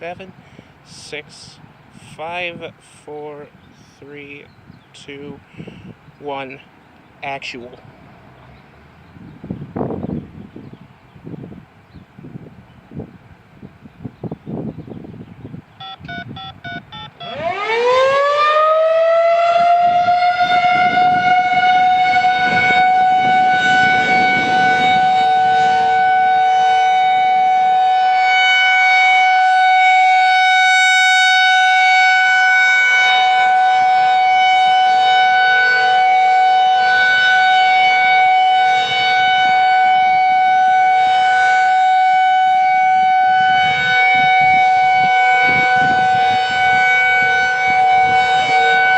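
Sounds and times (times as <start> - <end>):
stepped electronic beeps: 15.8 - 17.4
warning siren winding up: 15.8 - 48.9.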